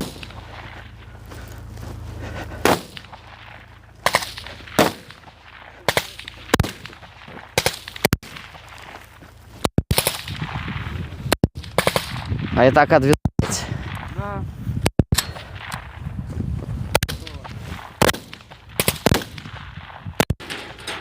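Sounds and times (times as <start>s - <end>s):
rifle single shots: 0.0s - 1.0s, 2.6s - 8.8s, 9.9s - 10.8s, 11.5s - 12.4s, 16.9s - 20.6s.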